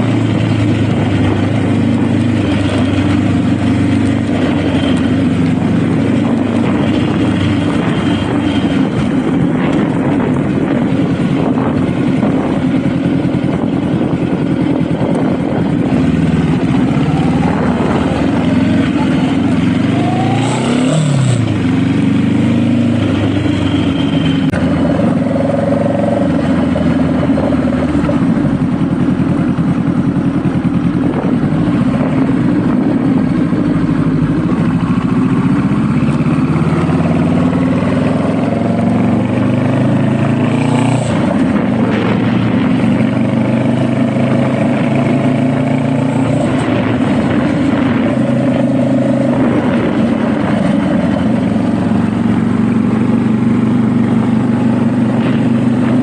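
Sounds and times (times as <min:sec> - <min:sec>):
motorcycle engine revving: 0:00.0 - 0:56.0
wind rush on microphone: 0:00.0 - 0:56.0.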